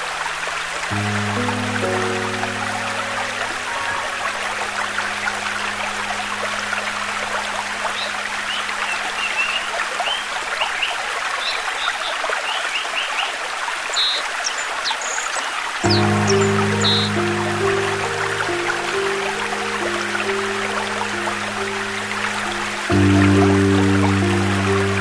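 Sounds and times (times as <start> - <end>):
stream water rushing: 0.0 - 25.0
small birds chirping: 8.0 - 17.1.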